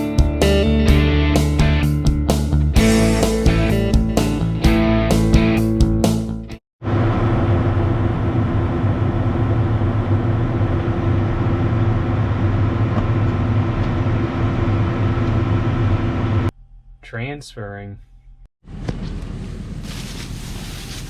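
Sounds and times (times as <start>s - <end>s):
large engine humming steadily: 6.9s - 16.5s.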